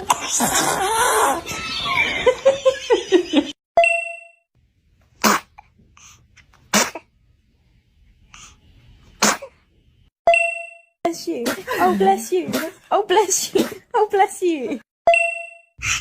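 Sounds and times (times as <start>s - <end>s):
baby sneezing: 0.0s - 1.0s, 5.2s - 5.6s, 6.7s - 7.1s, 9.2s - 9.6s.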